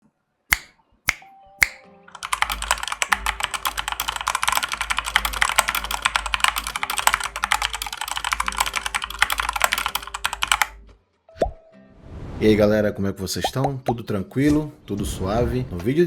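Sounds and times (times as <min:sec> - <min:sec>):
sharp snaps: 0:00.5 - 0:02.4
fast typing on mechanical keyboard: 0:02.1 - 0:10.8.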